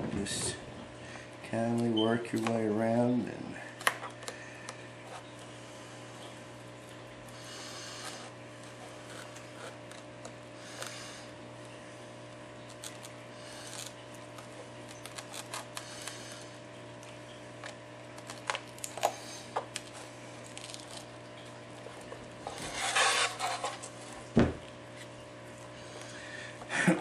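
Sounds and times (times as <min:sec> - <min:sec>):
dull knock: 0:24.4 - 0:24.6.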